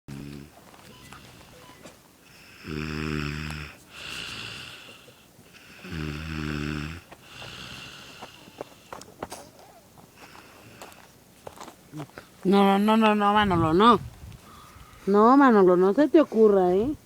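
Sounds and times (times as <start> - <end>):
person snoring: 2.4 - 8.5.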